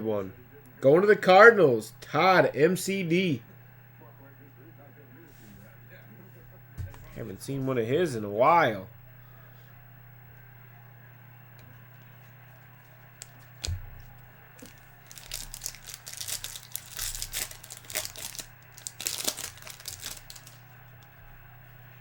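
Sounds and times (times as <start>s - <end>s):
foil wrappers tearing and crinkling: 14.6s - 20.6s.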